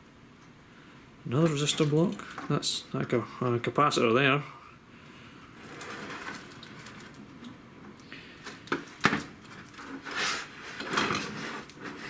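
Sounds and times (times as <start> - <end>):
scraping rustle: 5.6 - 7.5, 8.4 - 12.0.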